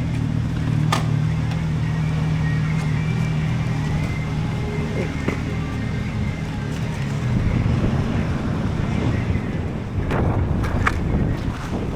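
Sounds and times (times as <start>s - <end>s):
motorcycle engine rumbling: 0.0s - 11.9s
wind buffeting microphone: 3.6s - 11.9s.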